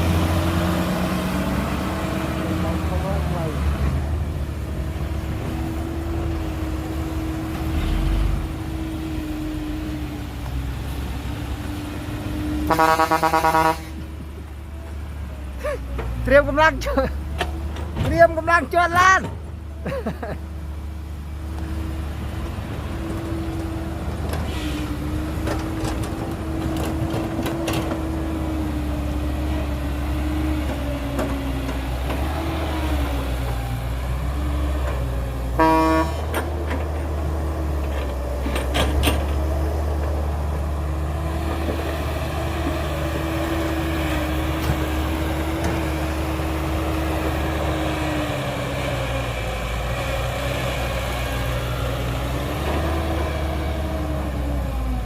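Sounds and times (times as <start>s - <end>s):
heavy diesel engine running: 0.0s - 55.0s
short horn toot: 12.7s - 14.0s, 35.6s - 36.3s.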